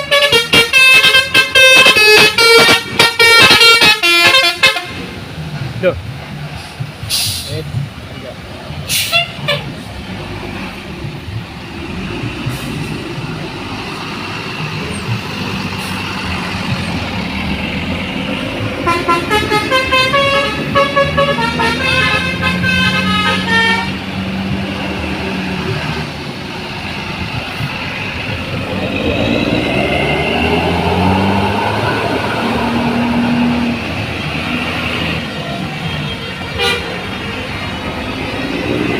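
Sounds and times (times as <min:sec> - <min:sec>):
musical bus horn tune: 0:00.0 - 0:05.2, 0:08.9 - 0:09.8, 0:18.4 - 0:24.4, 0:35.7 - 0:37.9
bus engine running: 0:00.0 - 0:38.9
traffic: 0:00.0 - 0:38.9.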